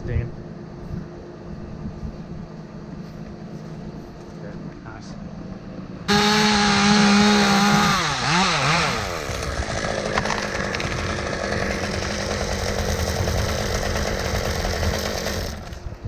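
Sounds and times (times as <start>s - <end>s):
chainsaw running: 6.1s - 16.0s.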